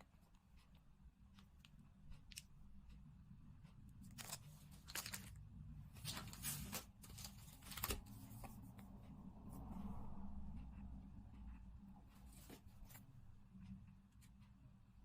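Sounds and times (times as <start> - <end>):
packaging crinkling and tearing: 4.1 - 5.3.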